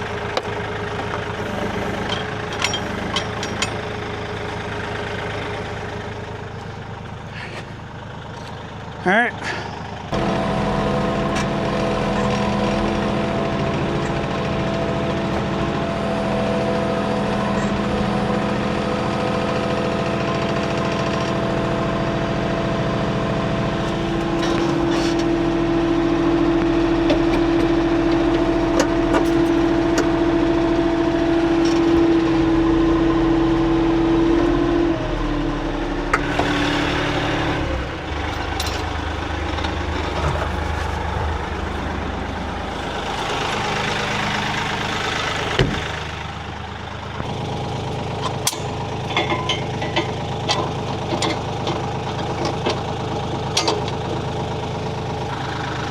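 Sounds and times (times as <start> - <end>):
tractor diesel engine running: 0.0 - 55.9.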